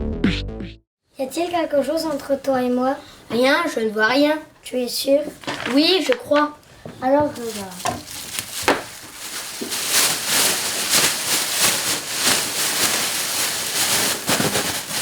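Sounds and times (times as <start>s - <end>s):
plastic bag rustling: 5.1s - 15.0s.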